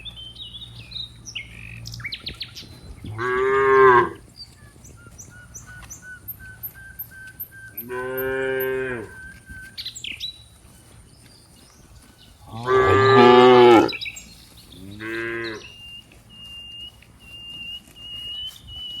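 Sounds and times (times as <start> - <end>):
cows mooing: 2.7 - 4.3, 7.6 - 9.4, 12.4 - 18.6.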